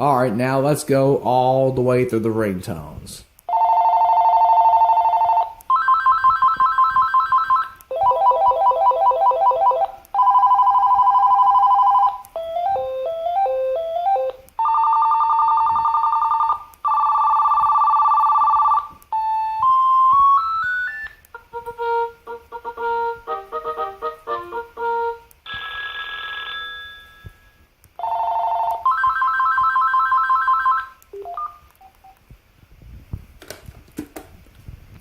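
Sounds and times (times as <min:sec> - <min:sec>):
cordless phone ringtones: 0:03.5 - 0:21.2, 0:25.0 - 0:32.2.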